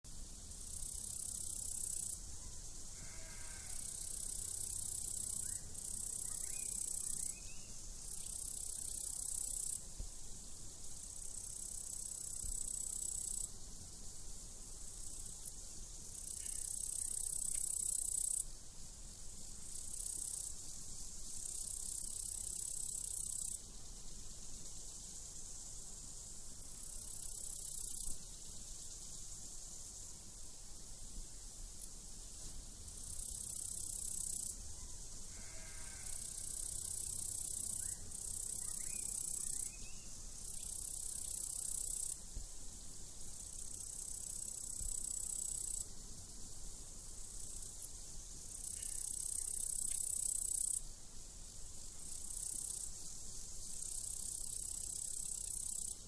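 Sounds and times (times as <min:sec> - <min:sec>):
crickets chirping: 0:00.1 - 0:56.0
sheep bleating faintly: 0:03.0 - 0:03.9, 0:35.3 - 0:36.3.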